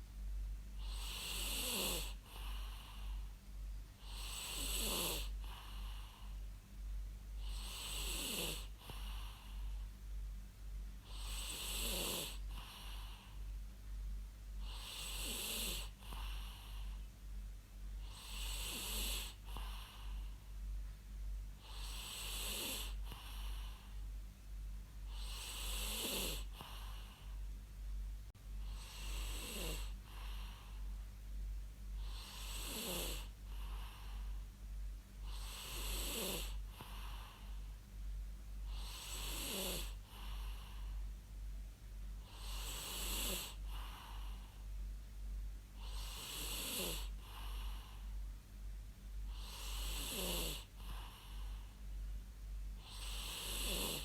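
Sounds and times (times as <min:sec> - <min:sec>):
steady low hum: 0:00.0 - 0:54.0
person snoring: 0:00.8 - 0:03.3, 0:04.0 - 0:06.3, 0:07.4 - 0:09.7, 0:11.1 - 0:13.3, 0:14.6 - 0:16.9, 0:18.0 - 0:20.2, 0:21.6 - 0:23.9, 0:25.1 - 0:27.2, 0:28.6 - 0:30.8, 0:32.0 - 0:34.3, 0:35.2 - 0:37.6, 0:38.7 - 0:40.9, 0:42.3 - 0:44.4, 0:45.8 - 0:48.0, 0:49.3 - 0:51.6, 0:52.8 - 0:54.0.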